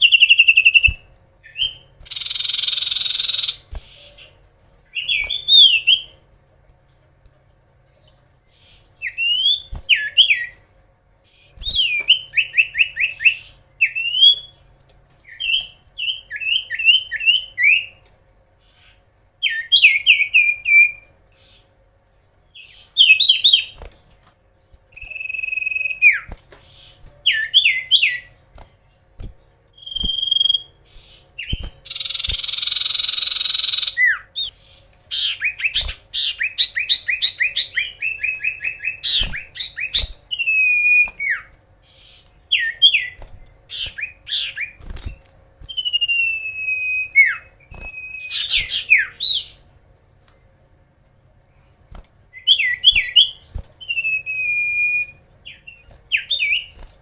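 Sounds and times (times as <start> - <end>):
bird singing whistled notes: 0.0 - 4.3, 25.0 - 26.3, 29.8 - 34.6, 35.2 - 41.5, 45.7 - 49.6, 52.4 - 56.8.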